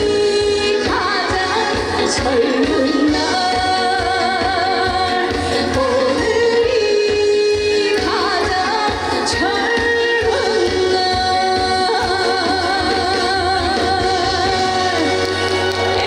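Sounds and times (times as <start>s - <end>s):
backing track with steady beat: 0.0s - 16.0s
person singing with vibrato: 0.0s - 16.0s.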